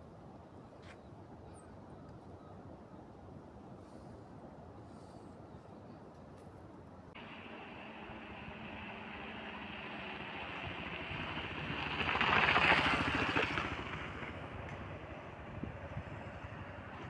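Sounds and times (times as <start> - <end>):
motor vehicle passing by: 7.2 - 17.0.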